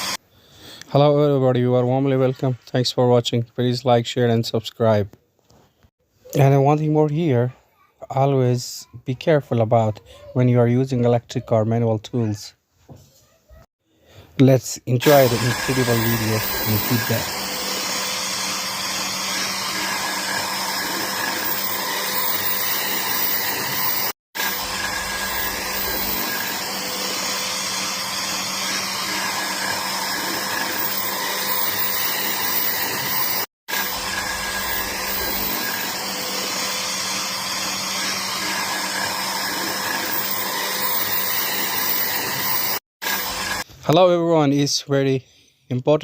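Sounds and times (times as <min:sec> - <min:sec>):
power tool motor whirring: 0:00.0 - 0:00.2, 0:15.0 - 0:43.7.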